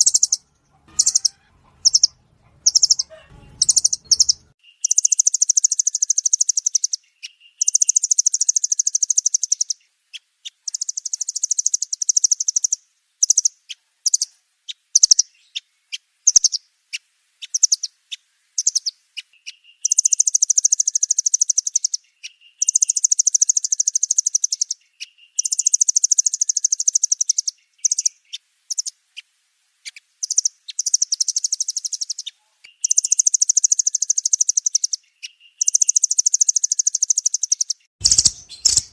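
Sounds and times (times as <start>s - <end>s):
nuthatch rapid high trills: 0.0s - 5.3s, 38.0s - 38.9s
bird sharp chips and low notes: 0.0s - 6.3s, 35.6s - 38.9s.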